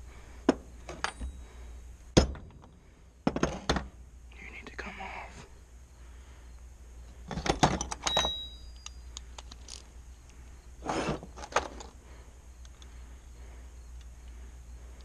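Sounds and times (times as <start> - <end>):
metal tools clinking and rattling: 0.9 - 1.5, 7.3 - 9.9.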